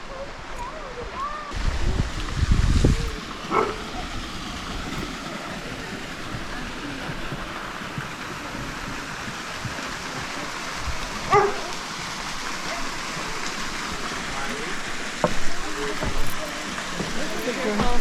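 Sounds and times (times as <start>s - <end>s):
waterfall rushing: 0.0s - 18.0s
dog barking: 3.5s - 4.0s, 11.2s - 11.8s.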